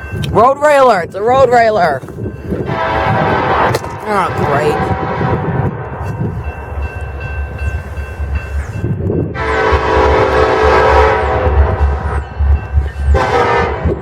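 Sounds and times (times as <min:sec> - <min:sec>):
train rumbling: 0:00.0 - 0:14.0
locomotive horn blast: 0:02.6 - 0:05.9, 0:09.3 - 0:12.2, 0:13.1 - 0:14.0.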